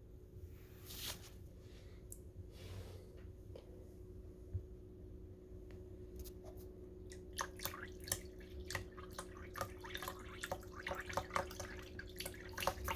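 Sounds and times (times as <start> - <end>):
water dripping and splashing: 7.1 - 12.9.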